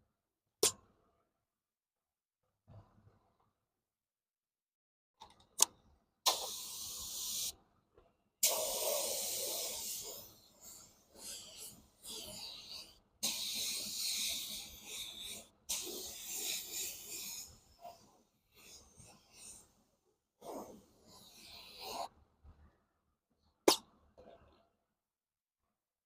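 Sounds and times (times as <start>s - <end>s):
spray nozzle hissing: 6.3s - 7.5s, 8.4s - 10.2s, 12.1s - 17.4s.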